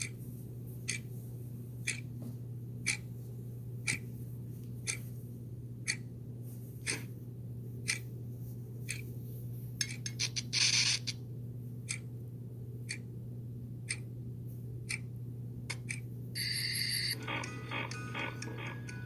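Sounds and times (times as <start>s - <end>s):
constant low hum: 0.0s - 19.0s
clock ticking: 1.8s - 2.0s, 2.8s - 3.0s, 15.7s - 16.0s, 17.2s - 19.0s
bright ringing tone: 16.4s - 19.0s.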